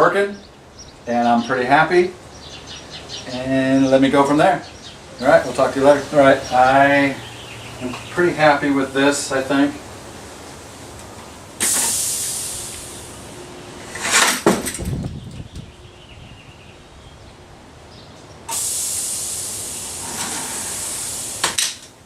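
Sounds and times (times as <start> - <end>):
compressed air hissing: 11.6 - 14.6, 18.4 - 22.0
mechanism knocks and rattles: 14.0 - 15.5.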